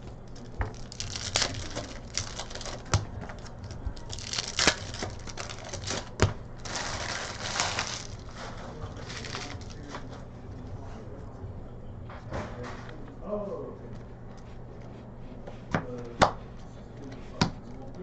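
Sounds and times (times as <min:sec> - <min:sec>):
foil wrappers crinkling and tearing: 0:00.0 - 0:10.1.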